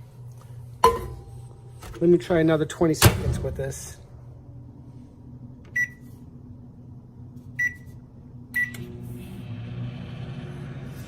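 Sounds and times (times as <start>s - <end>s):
microwave oven humming: 0.0s - 11.0s
microwave keypad beeps: 5.8s - 6.0s, 7.6s - 7.9s, 8.6s - 8.8s.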